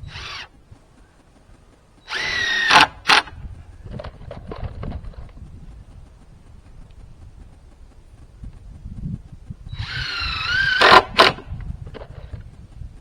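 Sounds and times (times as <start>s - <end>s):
power drill whining: 0.0s - 1.3s, 2.0s - 5.2s, 9.7s - 12.4s.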